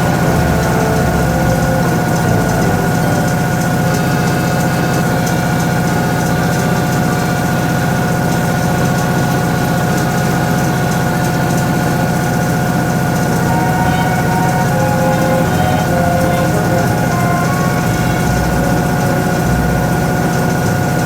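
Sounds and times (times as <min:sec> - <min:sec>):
high-pitched whine: 0:00.0 - 0:04.4, 0:13.3 - 0:21.0
washing machine motor hum: 0:00.0 - 0:05.0.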